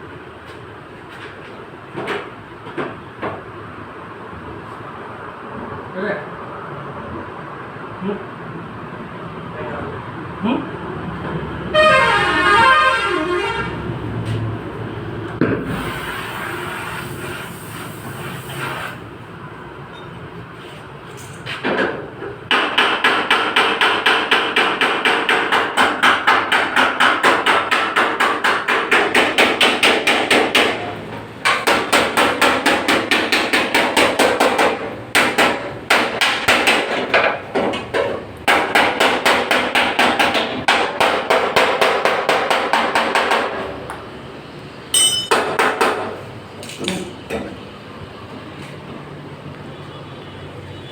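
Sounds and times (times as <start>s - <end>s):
hammer beating car panel: 21.7s - 43.7s, 45.3s - 46.2s.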